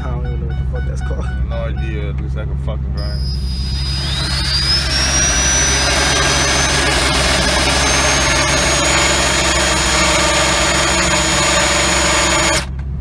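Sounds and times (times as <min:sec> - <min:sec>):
low hum: 0:00.0 - 0:12.7
rotary tool grinding whine: 0:03.0 - 0:12.7.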